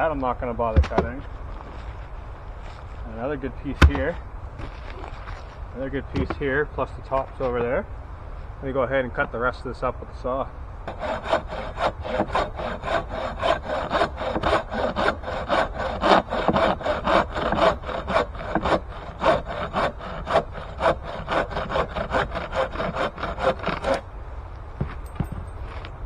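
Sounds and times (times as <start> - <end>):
hand saw cutting wood: 10.9 - 24.0.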